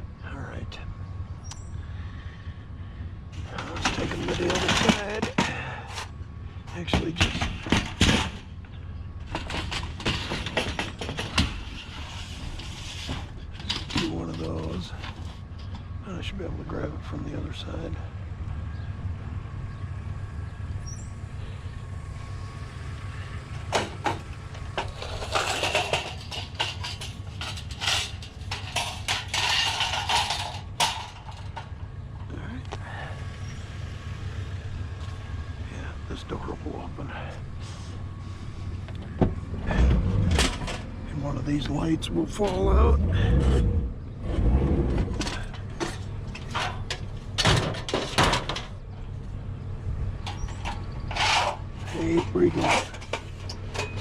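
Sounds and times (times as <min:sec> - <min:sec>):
low rumble: 0:00.0 - 0:54.0
scrap items clattering and scraping: 0:03.4 - 0:15.9, 0:23.5 - 0:31.9, 0:37.1 - 0:41.0, 0:44.3 - 0:48.8, 0:50.2 - 0:54.0.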